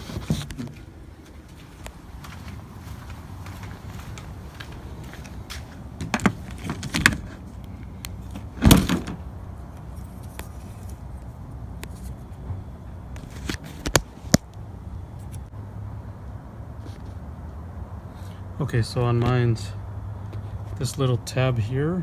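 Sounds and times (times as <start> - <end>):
wiper blade clicks and knocks: 6.0 - 7.4.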